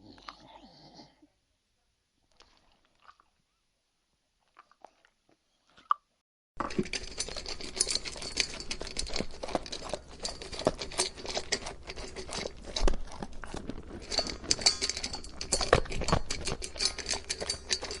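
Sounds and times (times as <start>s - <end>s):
dog crunching food: 6.6s - 18.0s.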